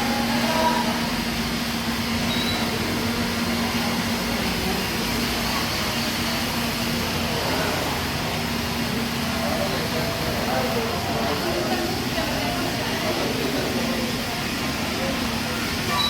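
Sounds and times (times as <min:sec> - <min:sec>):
vacuum cleaner running: 0:00.0 - 0:16.0.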